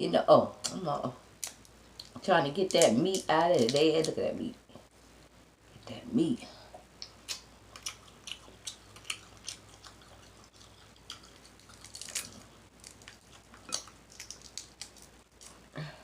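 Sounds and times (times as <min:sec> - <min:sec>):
wet smacking while eating: 0:06.9 - 0:15.6.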